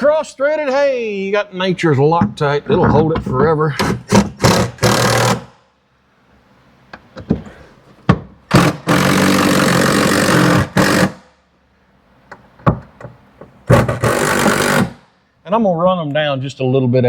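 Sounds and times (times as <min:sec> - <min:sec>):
cordless power driver running: 0:08.5 - 0:11.1, 0:14.0 - 0:15.0.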